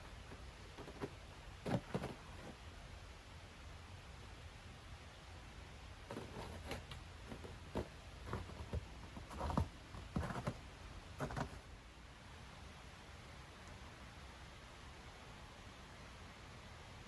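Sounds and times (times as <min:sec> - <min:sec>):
soft knocks and rustles: 0:00.0 - 0:02.6, 0:06.1 - 0:10.6, 0:11.2 - 0:11.6
faint steady hiss: 0:00.0 - 0:17.0.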